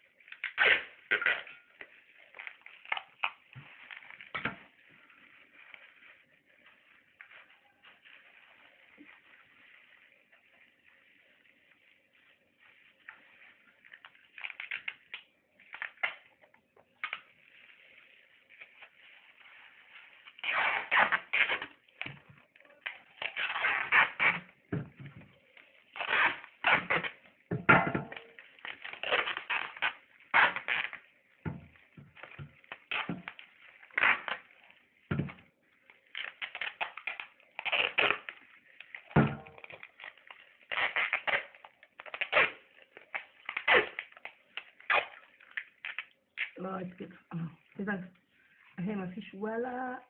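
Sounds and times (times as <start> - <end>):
adhesive tape pulled off roll: 0.1 - 46.7
plastic bag crinkling: 0.1 - 50.0.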